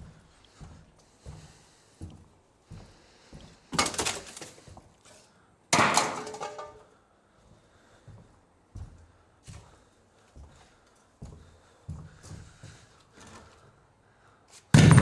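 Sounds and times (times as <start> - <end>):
debris crashing in metal container: 3.8 - 4.6, 5.8 - 6.8, 14.8 - 15.0.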